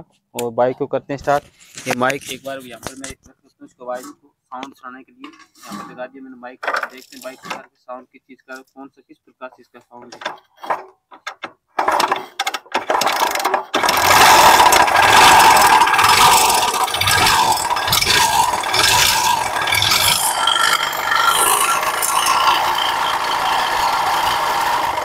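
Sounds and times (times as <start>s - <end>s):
motorcycle engine cranking: 11.3s - 25.0s
engine running with harsh rattle: 12.8s - 25.0s.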